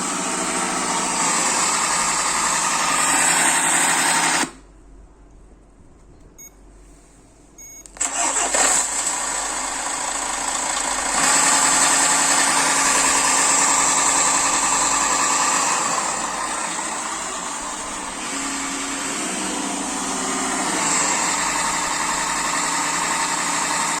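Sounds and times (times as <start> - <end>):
vehicle engine starting and running: 0.0 - 4.6, 8.0 - 24.0.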